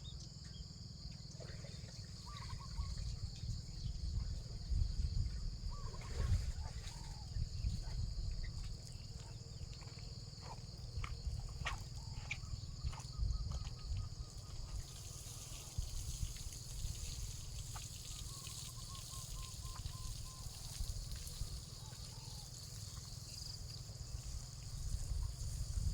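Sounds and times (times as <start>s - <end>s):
insects chirring: 0.0s - 25.9s
wind rumble on microphone: 2.2s - 25.9s
water trickling and splashing: 5.7s - 25.9s.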